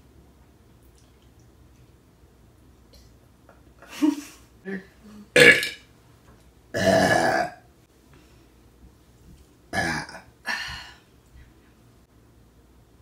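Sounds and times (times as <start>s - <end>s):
woman burping: 5.3s - 5.8s, 6.8s - 7.6s, 9.7s - 10.6s.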